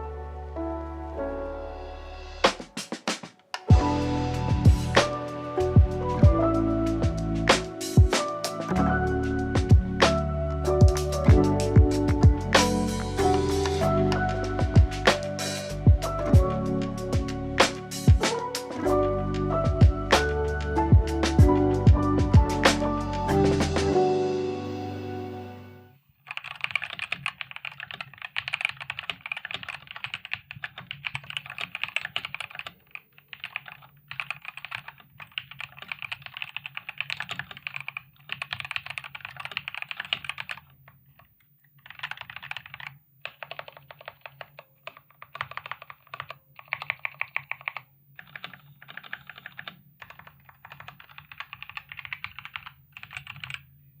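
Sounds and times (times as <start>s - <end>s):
mechanical keyboard typing: 10.9s - 16.2s, 26.3s - 53.7s.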